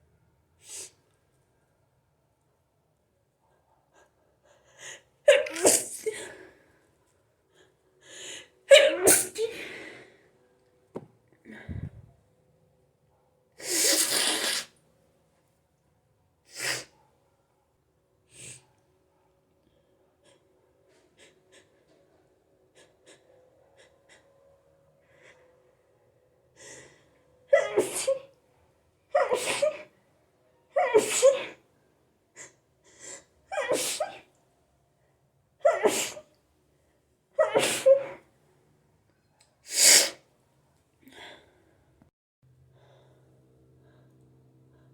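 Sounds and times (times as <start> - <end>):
person sneezing: 5.3 - 6.4, 8.7 - 9.7, 13.6 - 14.7, 27.6 - 28.2, 29.2 - 29.9, 30.8 - 31.6, 33.6 - 34.2, 35.7 - 36.2, 37.4 - 38.2, 39.7 - 40.2
gasping inhales: 11.5 - 12.1.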